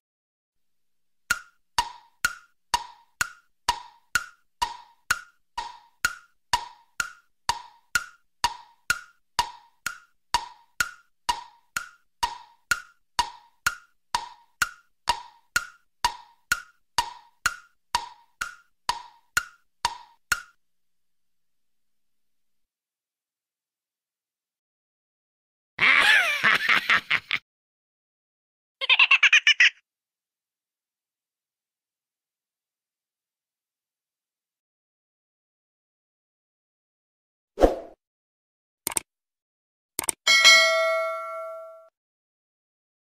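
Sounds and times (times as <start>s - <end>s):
wooden tick-tock: 1.3s - 20.6s, 40.0s - 40.6s.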